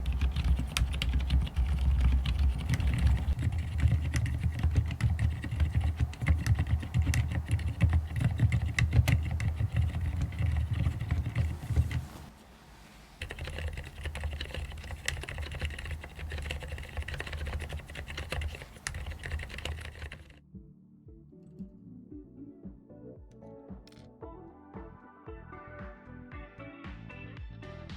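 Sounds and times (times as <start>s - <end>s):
soft muted keyboard typing: 0.0s - 12.3s, 13.2s - 20.4s.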